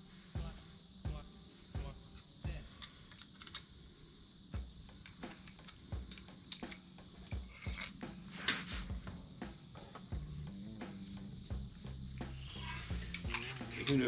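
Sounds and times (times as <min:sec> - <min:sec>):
metal parts clicking and knocking: 0:02.8 - 0:03.7, 0:05.0 - 0:06.9, 0:07.5 - 0:08.7.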